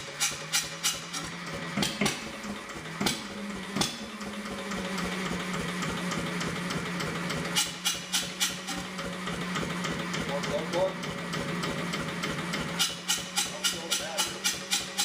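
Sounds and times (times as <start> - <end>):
generator engine humming: 0.0 - 15.0.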